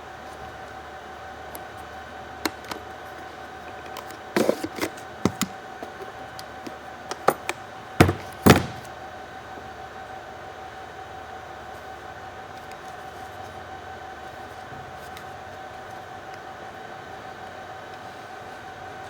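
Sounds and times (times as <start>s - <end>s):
clicks and knocks of laptop handling: 4.4s - 6.0s, 7.1s - 8.9s.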